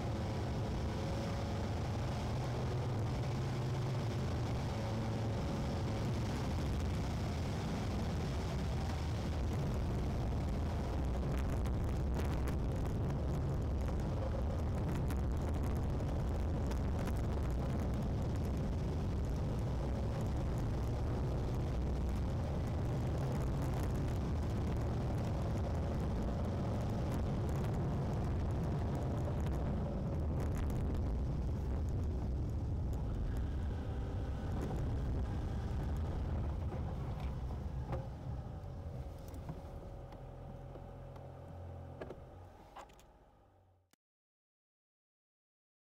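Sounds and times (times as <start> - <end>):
car engine and tyre rumble: 0.0 - 43.9.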